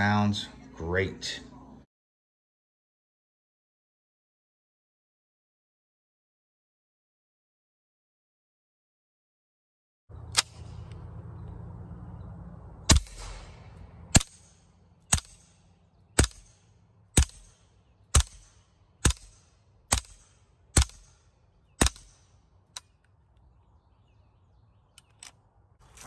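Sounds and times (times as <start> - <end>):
suppressed gunshots: 10.3 - 11.2, 12.8 - 22.9.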